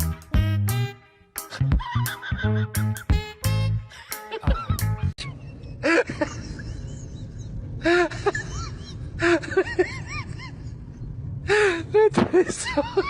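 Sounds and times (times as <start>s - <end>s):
steady low rumble: 4.5s - 13.0s.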